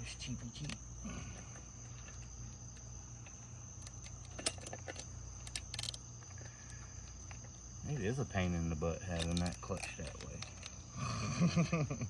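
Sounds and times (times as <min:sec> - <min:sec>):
crickets chirring: 0:00.0 - 0:12.0
chainsaw chain clicking and rattling: 0:03.3 - 0:06.5, 0:09.0 - 0:10.8.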